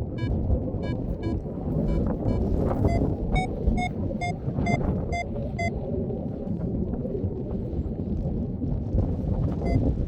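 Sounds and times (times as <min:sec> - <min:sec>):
variometer short beeps: 0:02.3 - 0:05.7.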